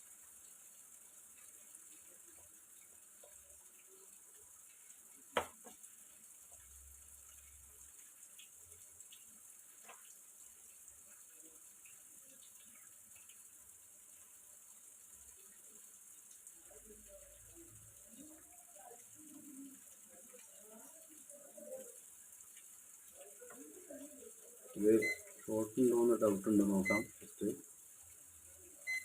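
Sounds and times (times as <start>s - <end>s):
faint steady hiss: 0.0s - 29.0s.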